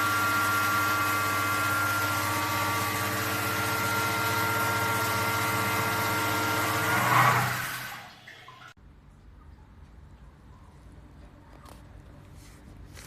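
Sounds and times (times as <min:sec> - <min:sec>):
water running hard: 0:00.0 - 0:08.8.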